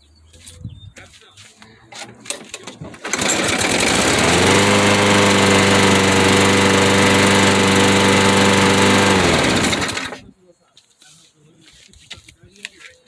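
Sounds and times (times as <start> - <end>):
lawnmower engine running: 2.0 - 10.3.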